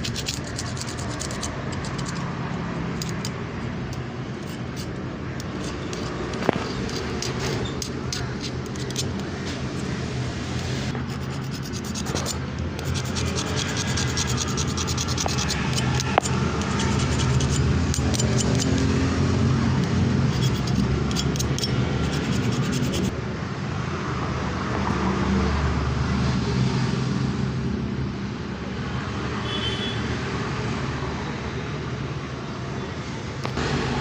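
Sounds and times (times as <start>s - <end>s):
scrubbing brake parts: 0.0s - 19.2s, 19.8s - 23.1s
road traffic rumble: 0.0s - 34.0s.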